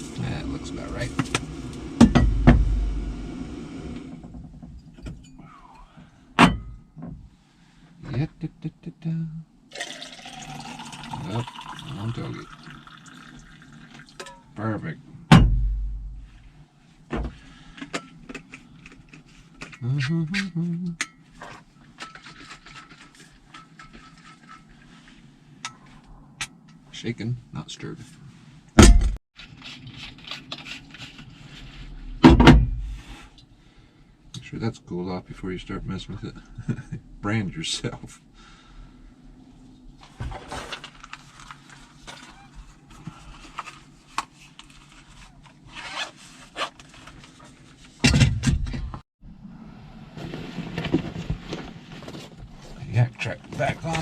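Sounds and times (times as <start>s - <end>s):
rustling and scuffing: 50.1s - 54.0s.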